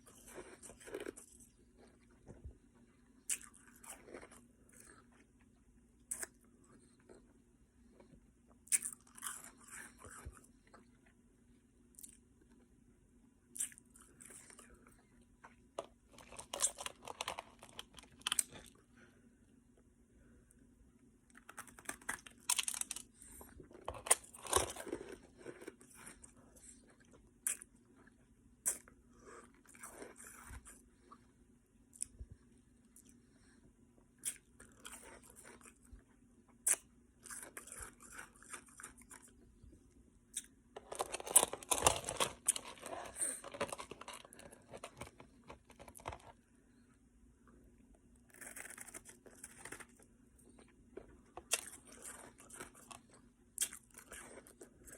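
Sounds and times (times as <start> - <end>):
ice being chewed: 36.7 - 39.4, 40.4 - 46.4, 48.3 - 54.9.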